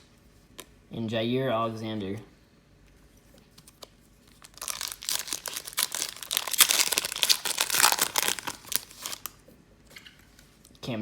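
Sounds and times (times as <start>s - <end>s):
wrapper tearing and crinkling: 4.3s - 9.4s.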